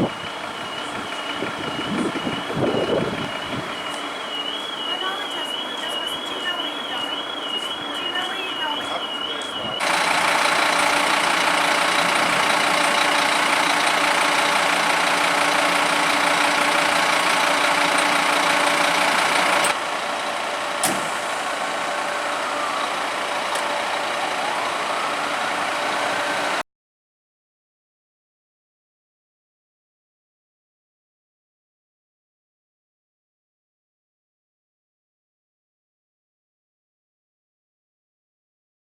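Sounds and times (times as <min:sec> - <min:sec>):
fire truck engine running: 0:00.0 - 0:26.6
sharp click: 0:20.8 - 0:21.1.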